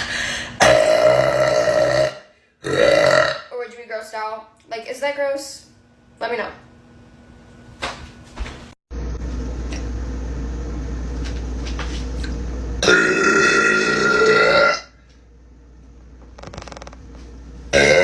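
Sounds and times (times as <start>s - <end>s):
woman burping loudly: 0.6s - 3.5s, 12.8s - 14.9s, 17.7s - 18.0s
low hum: 8.9s - 18.0s.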